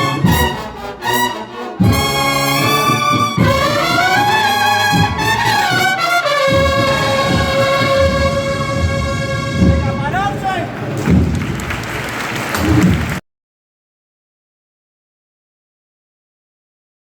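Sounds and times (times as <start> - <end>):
trumpets holding long notes: 0.0 - 10.8
brass band playing: 0.0 - 13.1.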